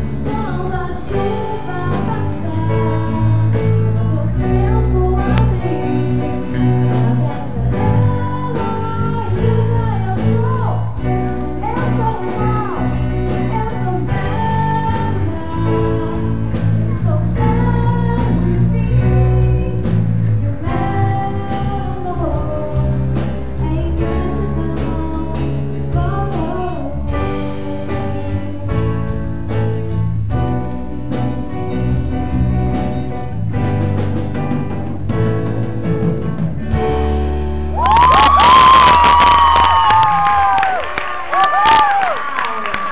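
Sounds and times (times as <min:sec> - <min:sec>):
pop song with vocals: 0:00.0 - 0:29.3
steady bass: 0:00.0 - 0:40.9
guitar: 0:00.0 - 0:42.9.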